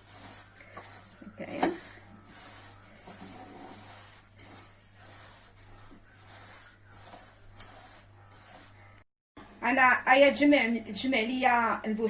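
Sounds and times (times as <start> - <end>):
hands mixing crumbs in bowl: 0.0 - 9.0.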